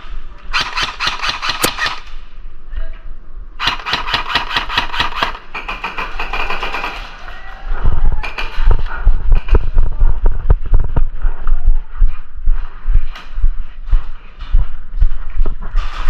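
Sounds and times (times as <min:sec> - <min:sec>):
airsoft guns firing bursts: 0:00.5 - 0:02.2, 0:03.6 - 0:07.1.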